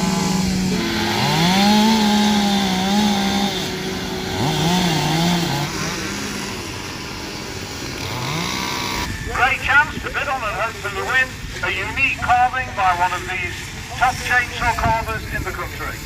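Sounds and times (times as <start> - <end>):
chainsaw revving while cutting: 0.0 - 9.2
chainsaw at steady pitch: 0.0 - 9.4.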